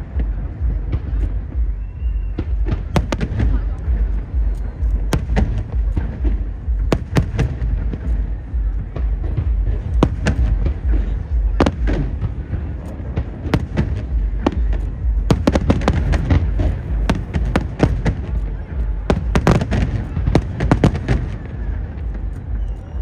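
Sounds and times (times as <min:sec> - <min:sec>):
fireworks bangs and cracks: 0:00.0 - 0:23.0
low rumble: 0:00.0 - 0:23.0.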